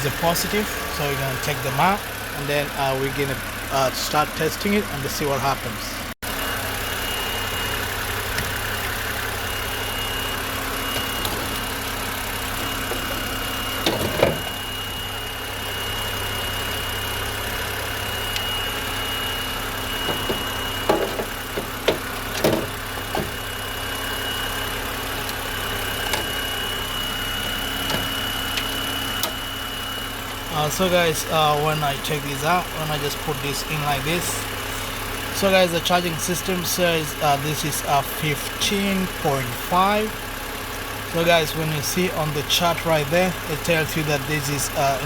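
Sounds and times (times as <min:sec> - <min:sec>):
car engine idling: 0:00.0 - 0:45.0
sharp clicks and knocks: 0:20.1 - 0:23.4.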